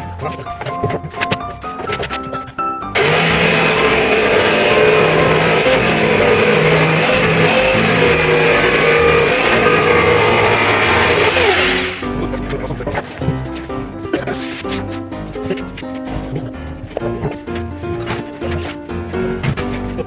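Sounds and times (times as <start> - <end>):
power tool motor whining: 3.0 - 12.2.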